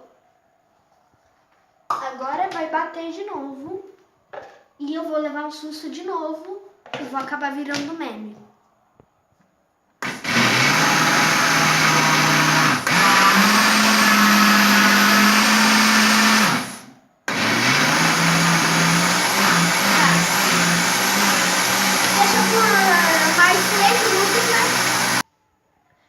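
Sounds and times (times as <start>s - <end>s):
electric blender motor: 10.0s - 25.2s.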